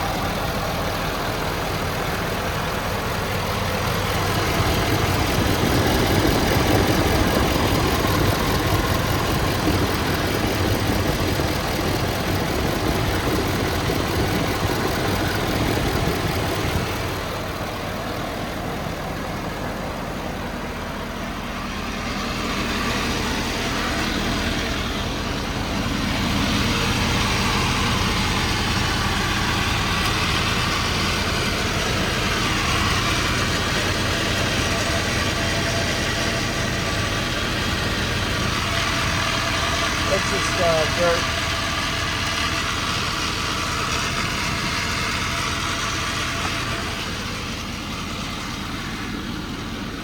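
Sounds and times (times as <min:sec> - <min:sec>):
diesel engine idling: 0:00.0 - 0:50.0.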